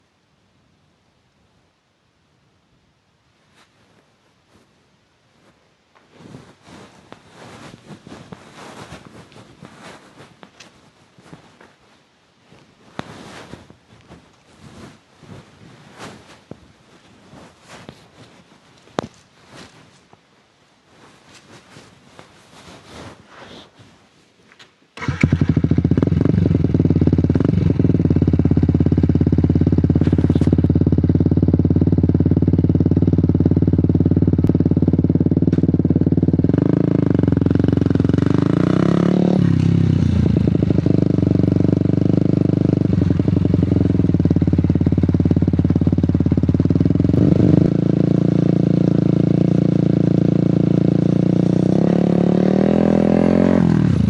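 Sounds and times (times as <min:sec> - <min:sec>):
motorcycle engine running: 0:25.0 - 0:54.0.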